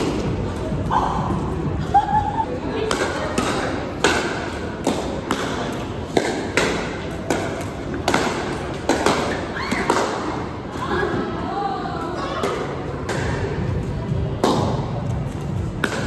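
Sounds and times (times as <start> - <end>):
paddles hitting plastic ball: 2.8 - 10.3, 15.7 - 16.0.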